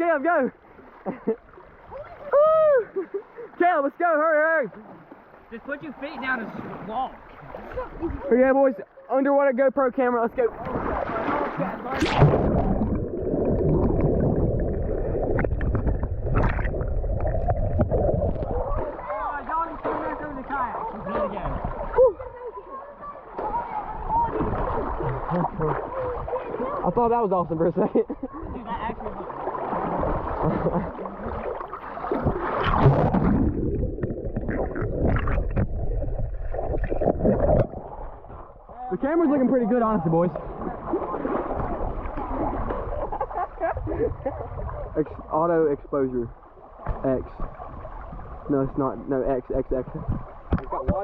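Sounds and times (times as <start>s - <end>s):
underwater rush of moving water: 4.6s - 8.6s, 10.3s - 51.0s
bubbly surges: 10.5s - 22.4s, 23.4s - 27.0s, 28.4s - 38.7s, 40.3s - 45.3s
underwater clicks and knocks: 15.3s - 18.8s, 32.2s - 38.8s, 46.8s - 47.5s, 50.0s - 51.0s
muffled underwater gurgling: 29.9s - 38.8s.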